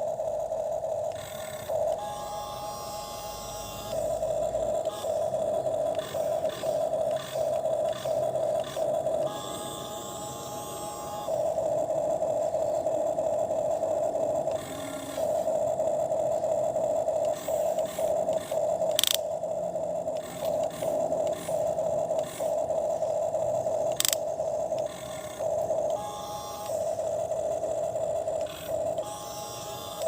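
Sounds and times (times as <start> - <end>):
toy electric motor whining: 0.0 - 30.0
sharp clicks: 4.7 - 9.6, 16.9 - 19.4, 20.1 - 29.1.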